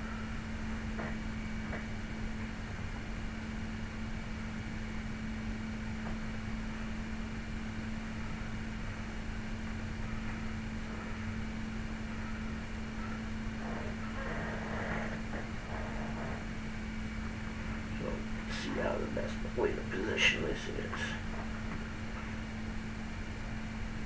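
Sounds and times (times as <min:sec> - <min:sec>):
constant hiss: 0:00.0 - 0:24.0
low electrical hum: 0:00.0 - 0:24.0.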